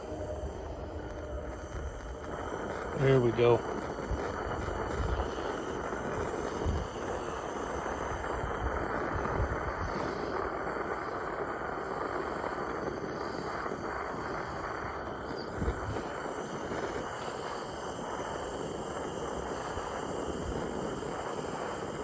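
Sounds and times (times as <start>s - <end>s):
gas torch flame hissing: 0.0s - 22.0s.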